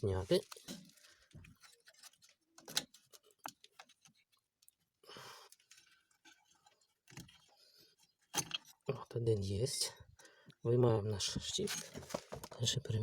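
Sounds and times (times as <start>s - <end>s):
rustling: 11.6s - 12.7s.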